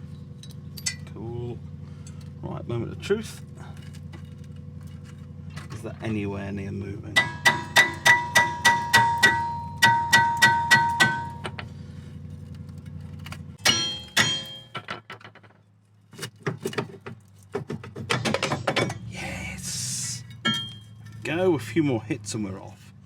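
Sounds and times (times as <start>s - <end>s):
metal disc ringing: 7.1s - 11.7s, 13.6s - 15.1s, 18.1s - 19.1s, 20.2s - 21.4s
hammer striking metal disc: 7.2s - 11.7s, 13.6s - 15.2s, 18.1s - 19.1s, 20.3s - 21.2s.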